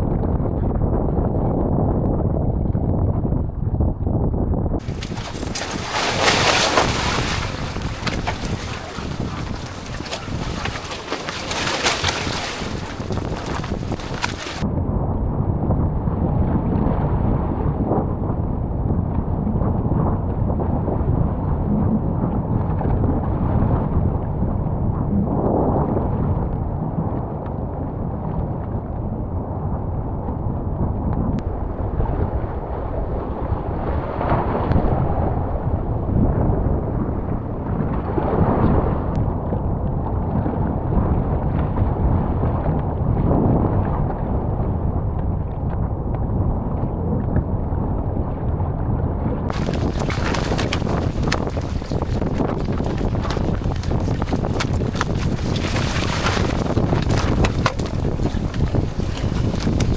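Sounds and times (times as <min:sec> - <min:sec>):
waves surging: 0:04.8 - 0:14.6, 0:31.4 - 0:39.2, 0:49.5 - 0:59.9
wind and heavy rain: 0:04.8 - 0:14.7, 0:31.4 - 0:39.2, 0:49.5 - 0:59.9.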